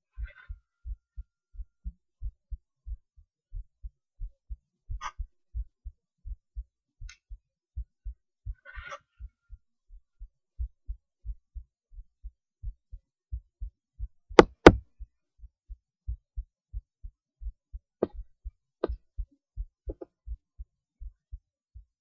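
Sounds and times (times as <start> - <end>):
heartbeat through stethoscope: 0.0 - 22.0
loud sharp knocks: 14.4 - 14.8.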